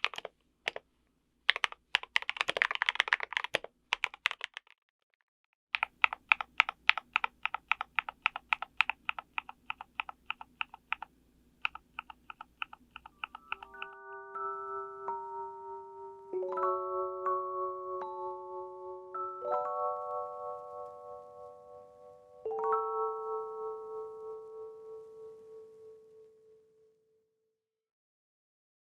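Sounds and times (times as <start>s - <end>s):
mechanical keyboard typing: 0.0s - 0.8s, 1.5s - 4.8s, 5.8s - 14.0s
bell-like music notes: 13.3s - 26.0s.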